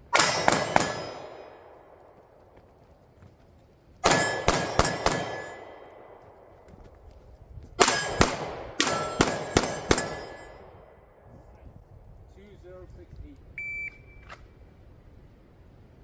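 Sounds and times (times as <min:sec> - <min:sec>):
steel targets clanging: 0:00.0 - 0:01.8, 0:04.0 - 0:06.2, 0:07.8 - 0:10.9
pistol shots: 0:00.0 - 0:02.2, 0:04.0 - 0:06.7, 0:07.8 - 0:11.0.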